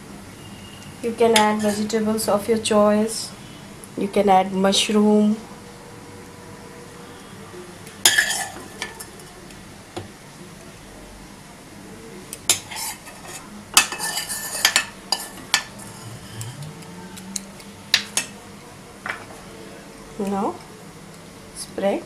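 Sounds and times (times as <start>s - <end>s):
metal spoon scraping cookware: 1.4s - 1.9s, 8.0s - 9.1s, 12.5s - 16.9s.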